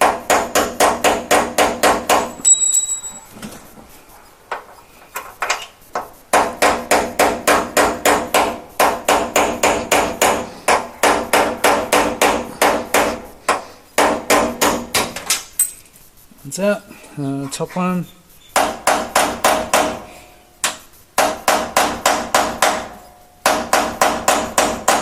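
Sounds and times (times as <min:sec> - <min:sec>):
hammer striking metal punch: 0:06.3 - 0:15.2, 0:20.6 - 0:25.0.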